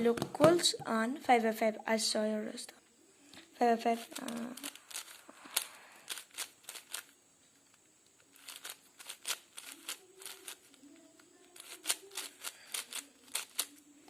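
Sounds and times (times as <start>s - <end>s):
puzzle cube clicking: 3.9s - 7.2s, 8.3s - 13.8s.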